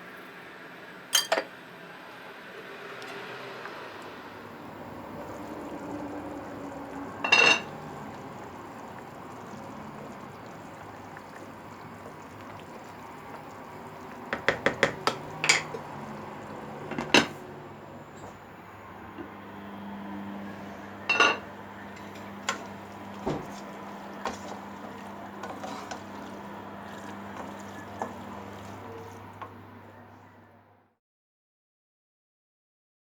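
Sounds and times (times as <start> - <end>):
dishes and cutlery clinking: 1.2 - 1.5, 7.2 - 7.7, 14.4 - 15.8, 16.9 - 17.4, 21.1 - 21.5.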